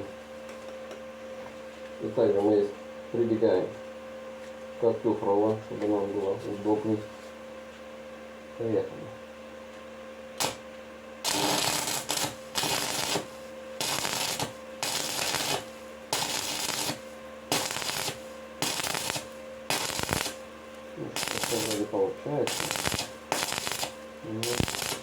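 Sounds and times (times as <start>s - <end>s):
faint steady hum: 0.0s - 25.0s
welding arc crackling: 10.4s - 10.6s, 11.2s - 20.4s, 21.0s - 25.0s.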